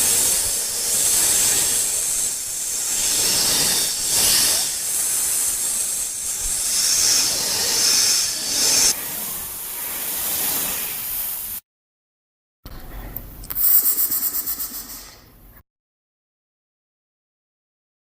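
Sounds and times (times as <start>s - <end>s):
snake hissing: 0.0s - 11.4s, 13.6s - 15.3s.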